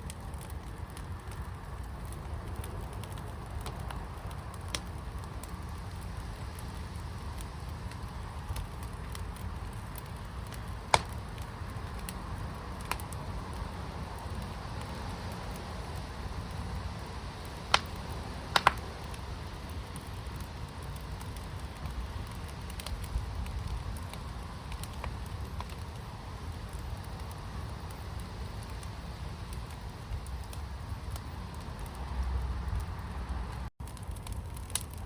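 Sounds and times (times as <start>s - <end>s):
fire crackling: 0.0s - 35.0s
fire popping: 0.0s - 35.0s.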